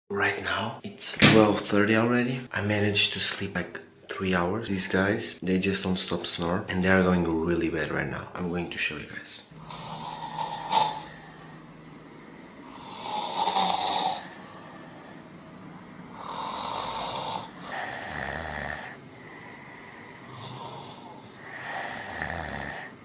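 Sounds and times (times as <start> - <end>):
people snoring: 9.5 - 15.4, 16.0 - 23.0.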